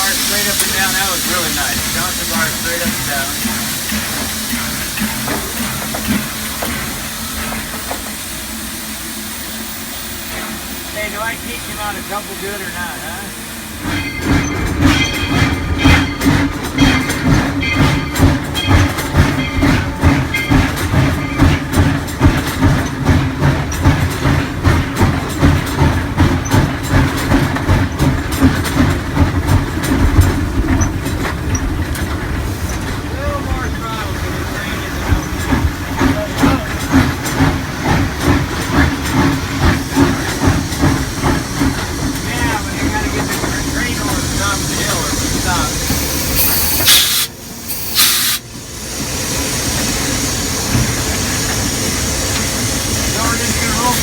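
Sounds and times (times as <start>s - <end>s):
steam hissing burst: 0.0s - 16.3s, 38.2s - 54.0s
steam locomotive running: 0.0s - 54.0s.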